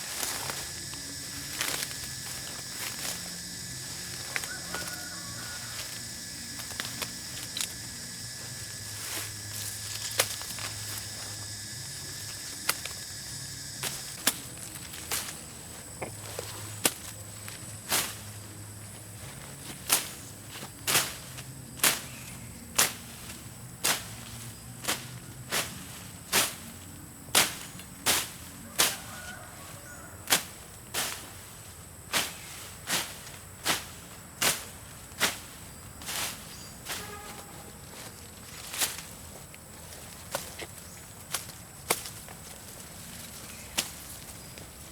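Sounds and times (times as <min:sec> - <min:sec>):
high-pitched whine: 0:00.0 - 0:15.6.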